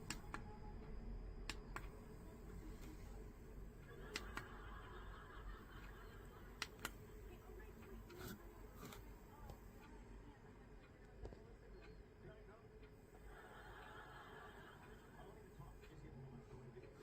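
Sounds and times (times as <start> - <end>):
soft clicks: 0.0 - 3.2, 3.8 - 4.8, 5.8 - 9.9.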